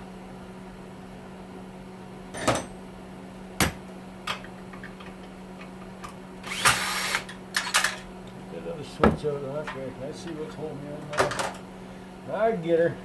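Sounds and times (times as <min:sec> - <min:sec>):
steady low hum: 0:07.3 - 0:13.0.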